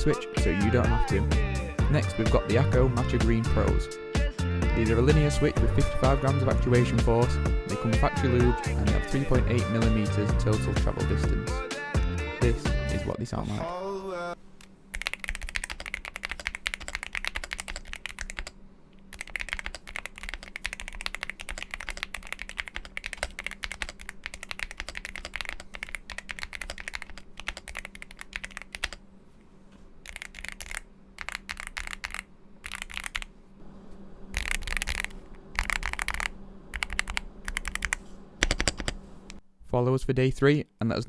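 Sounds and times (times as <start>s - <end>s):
mechanical keyboard typing: 14.9s - 29.0s, 30.0s - 33.3s, 34.4s - 39.0s.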